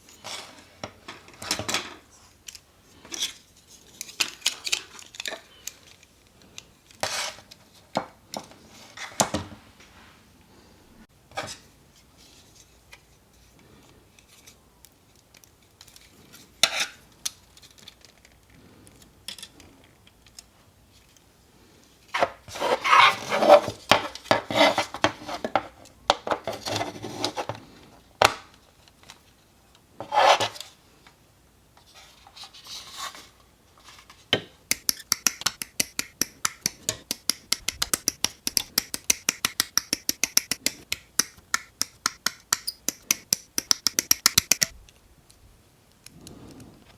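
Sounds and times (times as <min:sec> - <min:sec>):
plastic parts clicking and snapping: 0:04.0 - 0:06.7, 0:34.7 - 0:44.7.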